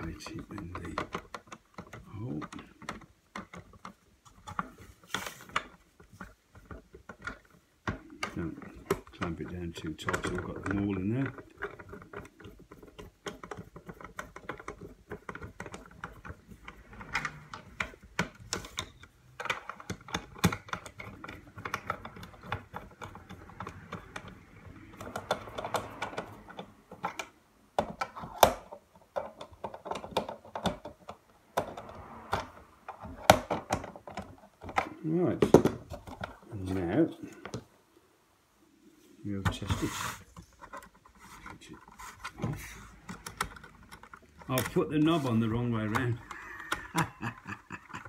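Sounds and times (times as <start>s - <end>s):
plastic case being handled: 0.0s - 37.7s, 39.3s - 48.0s.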